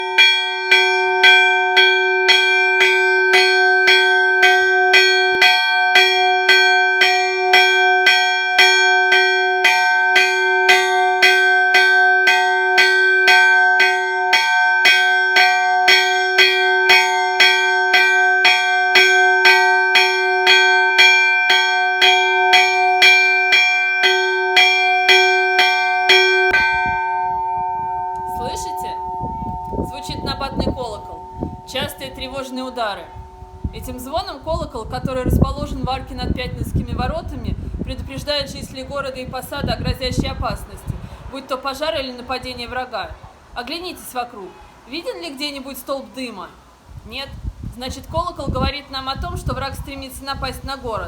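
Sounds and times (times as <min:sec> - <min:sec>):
alarm bell struck rapidly: 0:11.3 - 0:33.6.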